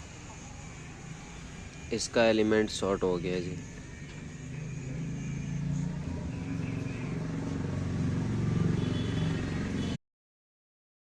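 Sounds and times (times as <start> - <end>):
motor vehicle rumble: 3.6 - 10.0.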